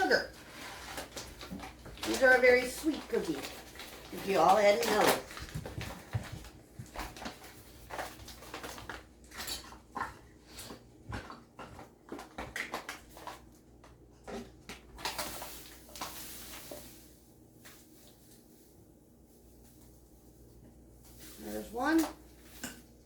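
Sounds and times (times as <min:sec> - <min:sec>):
sugar pouring hiss: 0:15.1 - 0:19.9.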